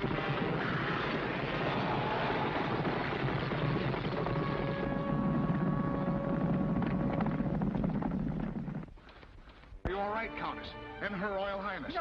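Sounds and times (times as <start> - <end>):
carriage wheels and hooves rumbling: 0.0 - 9.8
dramatic orchestral music: 10.0 - 12.0.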